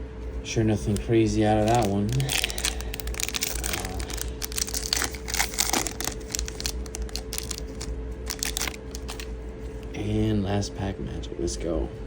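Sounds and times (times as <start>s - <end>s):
faint steady hum: 0.0s - 12.0s
foil wrapper crinkling and tearing: 0.7s - 9.9s.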